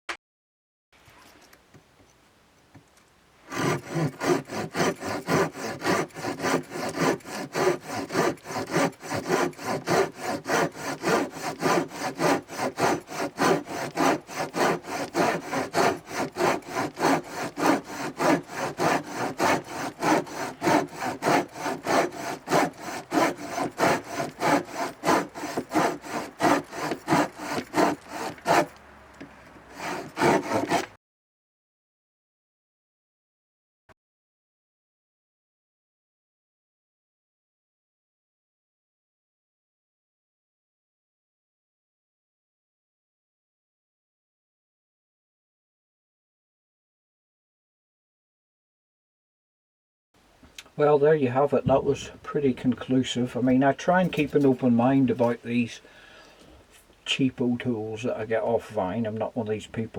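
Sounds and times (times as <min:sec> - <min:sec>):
hand saw cutting wood: 0:03.5 - 0:28.8, 0:29.7 - 0:31.0, 0:50.6 - 0:55.7.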